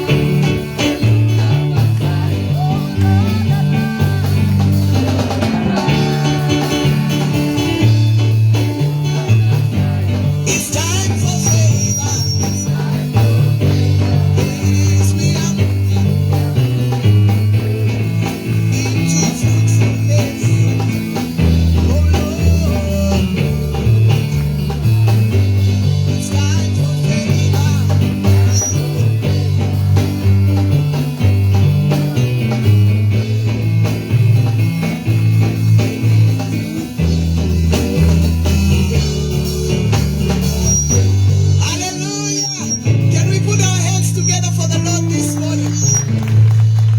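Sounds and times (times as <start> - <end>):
bass guitar: 0.0 - 46.9
electric guitar: 0.0 - 46.9
steady drum beat: 0.0 - 46.9.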